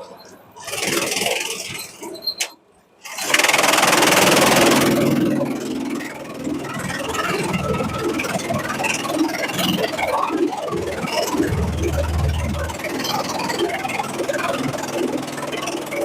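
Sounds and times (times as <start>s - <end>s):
shredder machine running: 3.1s - 16.0s.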